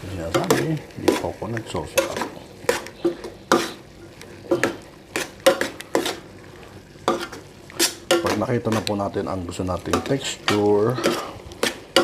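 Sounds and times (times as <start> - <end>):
utensil knocking and scraping pan: 0.2 - 3.8, 9.8 - 12.0.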